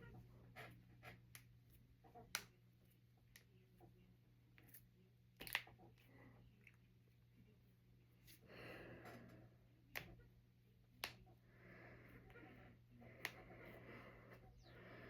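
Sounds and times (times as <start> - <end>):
faint low hum: 0.0 - 15.0
knuckles cracking: 5.4 - 5.8, 11.0 - 11.3.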